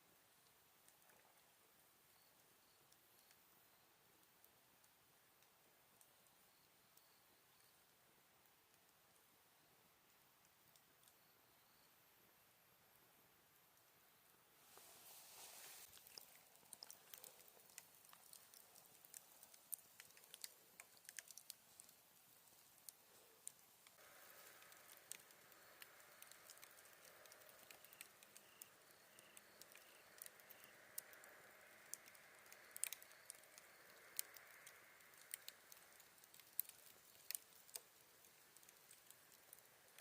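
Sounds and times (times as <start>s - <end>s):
fire hissing: 14.6s - 40.0s
campfire crackling and popping: 14.7s - 40.0s.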